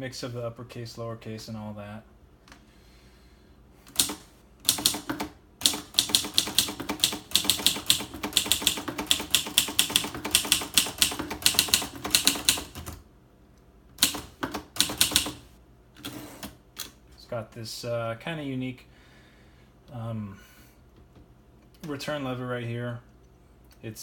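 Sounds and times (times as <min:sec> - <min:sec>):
manual typewriter key strikes: 0:03.9 - 0:12.9, 0:14.0 - 0:15.4.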